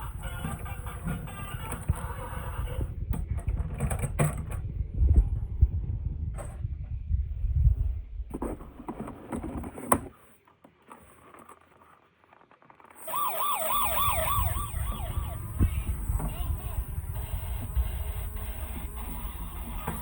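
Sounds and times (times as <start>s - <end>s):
toy electronic siren wailing: 0.0s - 2.9s, 13.0s - 20.0s.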